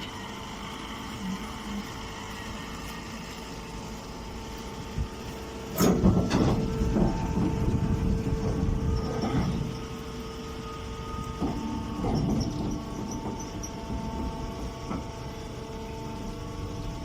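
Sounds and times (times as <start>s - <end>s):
baling machine hum: 0.0s - 17.0s
machine clanking and rattling: 5.5s - 10.1s, 10.9s - 17.0s.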